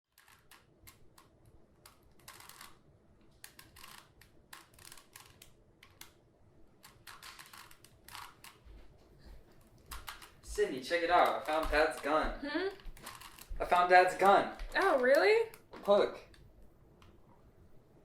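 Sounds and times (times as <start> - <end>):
puzzle cube clicking as twisted: 0.1 - 2.8, 3.4 - 6.2, 6.8 - 8.6, 9.9 - 10.4, 11.1 - 16.4.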